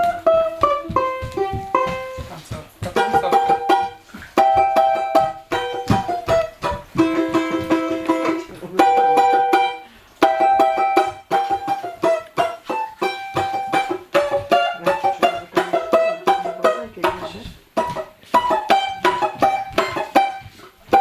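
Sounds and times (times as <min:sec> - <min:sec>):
plucked string music: 0:00.0 - 0:21.0.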